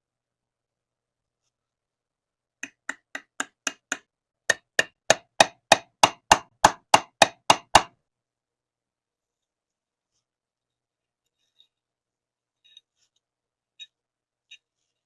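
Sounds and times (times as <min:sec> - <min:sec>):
hammer strikes: 0:02.6 - 0:07.9.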